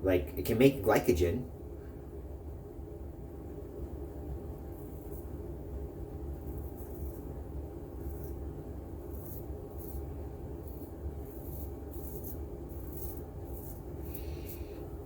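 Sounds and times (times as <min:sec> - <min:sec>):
steady low hum: 0:00.0 - 0:15.0
razor scraping stubble: 0:04.6 - 0:05.4, 0:06.3 - 0:15.0.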